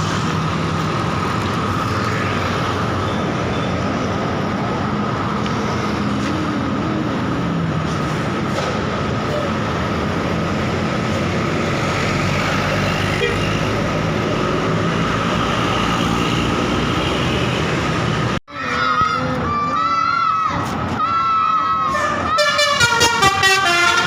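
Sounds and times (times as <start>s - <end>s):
traffic on busy road: 0.0s - 24.0s
crowd shouting: 18.5s - 24.0s.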